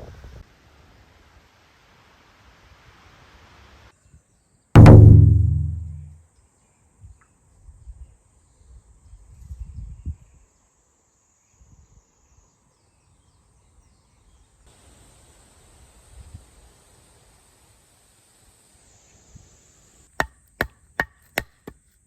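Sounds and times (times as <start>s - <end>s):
low rumbles: 4.8s - 6.1s.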